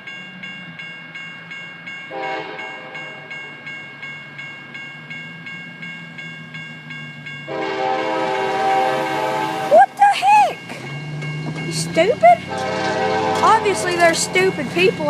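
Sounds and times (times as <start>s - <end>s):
crossing bell ringing: 0.0s - 15.0s
train air horn blasts: 2.1s - 3.2s, 7.5s - 9.8s, 12.5s - 14.5s
locomotive engine rumbling: 5.7s - 15.0s.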